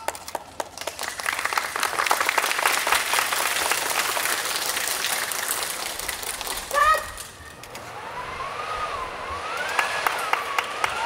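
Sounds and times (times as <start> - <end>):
audience applauding: 0.0 - 6.8, 9.7 - 11.0.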